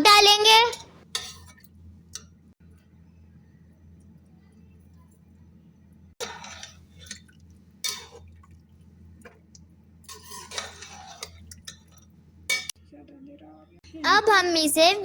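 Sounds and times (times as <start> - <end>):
spoon scraping and clinking pot: 0.7 - 1.6, 6.2 - 8.4, 10.0 - 12.7.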